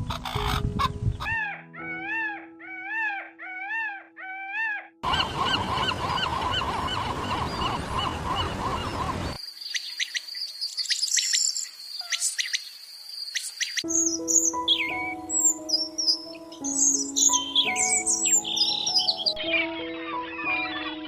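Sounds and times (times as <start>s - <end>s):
small birds chirping: 5.0s - 21.0s.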